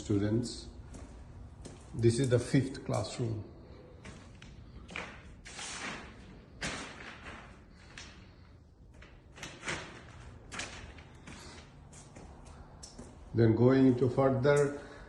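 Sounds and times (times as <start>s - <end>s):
footsteps scuffing on floor: 0.8s - 2.5s, 11.2s - 13.3s.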